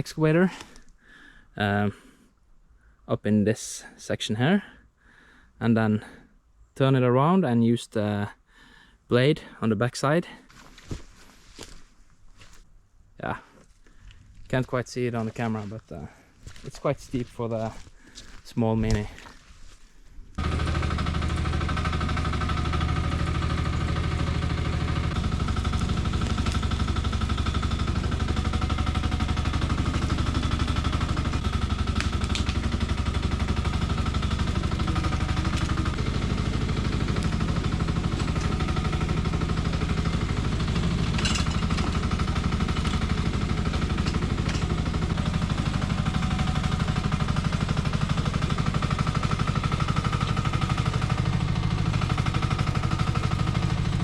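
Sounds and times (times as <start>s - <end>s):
excavator engine chugging: 20.4s - 54.0s
sharp metallic clanks: 40.9s - 42.2s.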